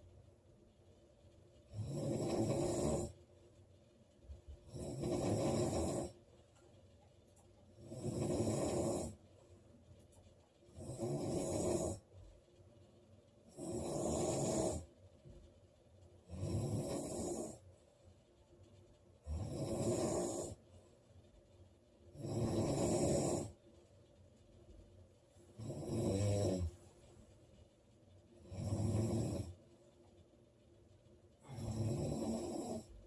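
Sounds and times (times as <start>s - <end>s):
quiet breaths: 0.0s - 33.0s
woman snoring loudly: 1.7s - 3.1s, 4.7s - 6.1s, 7.8s - 9.2s, 10.8s - 12.0s, 13.5s - 14.8s, 16.3s - 17.6s, 19.3s - 20.6s, 22.2s - 23.5s, 25.6s - 26.7s, 28.5s - 29.5s, 31.4s - 32.9s.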